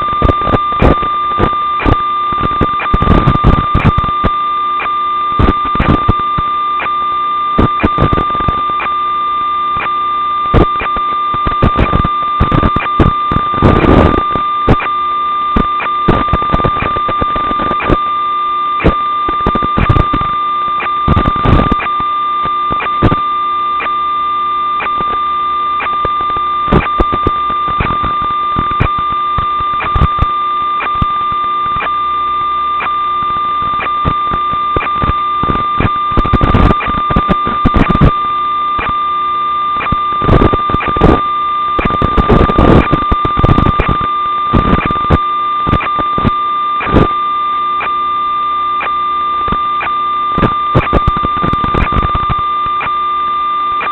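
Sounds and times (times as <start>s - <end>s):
crackling static: 0.0s - 53.9s
electronic buzz with high whine: 0.0s - 53.9s.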